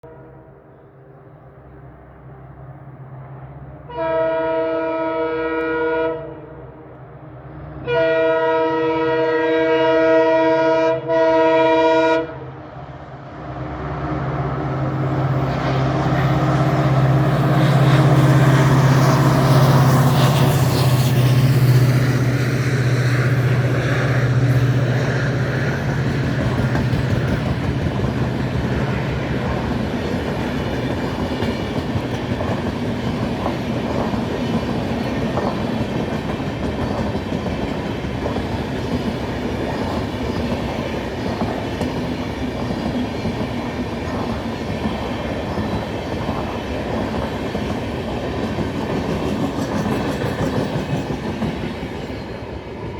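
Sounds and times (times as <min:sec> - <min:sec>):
diesel locomotive engine humming: 0:00.1 - 0:52.9
train wheels clacking over rail joints: 0:23.2 - 0:52.3.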